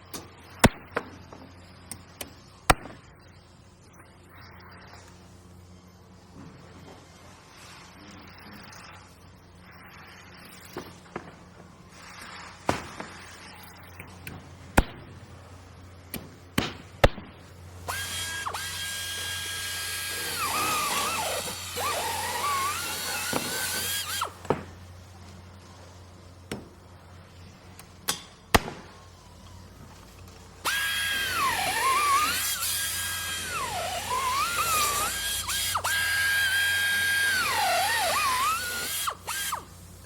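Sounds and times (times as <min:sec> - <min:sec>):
power drill whining: 0:17.8 - 0:24.5, 0:29.1 - 0:39.9.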